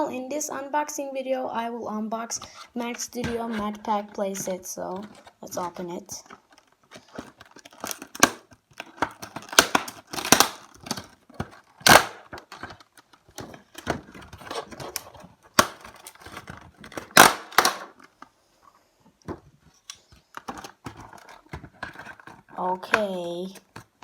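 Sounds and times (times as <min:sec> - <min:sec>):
packaging tearing and crinkling: 0:06.3 - 0:18.1.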